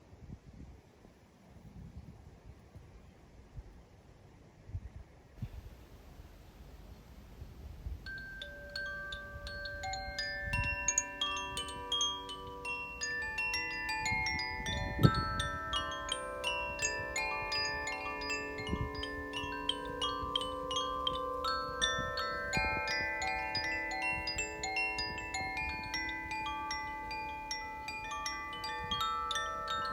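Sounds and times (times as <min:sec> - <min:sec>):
wind chimes ringing: 0:06.6 - 0:29.9.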